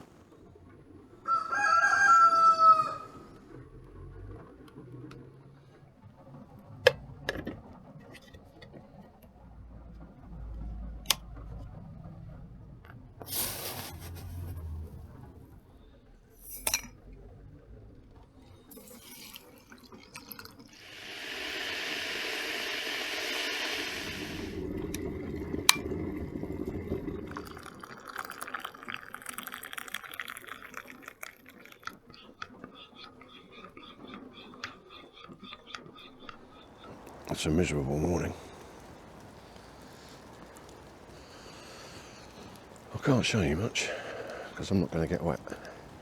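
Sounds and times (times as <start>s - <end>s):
water flowing: 18.2s - 46.0s.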